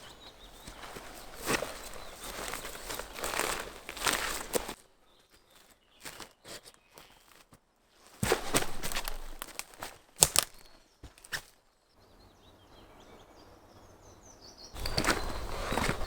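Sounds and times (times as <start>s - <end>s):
rustling: 0.0s - 4.8s, 8.0s - 11.6s, 14.8s - 16.0s
small bird chirping: 0.0s - 7.4s, 10.5s - 16.0s
footsteps crunching on forest ground: 0.0s - 11.6s, 14.8s - 16.0s.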